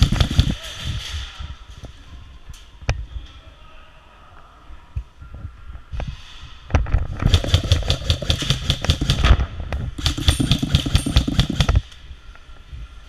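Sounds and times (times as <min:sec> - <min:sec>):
airsoft rifle firing full auto: 0:07.3 - 0:09.4, 0:10.0 - 0:11.8.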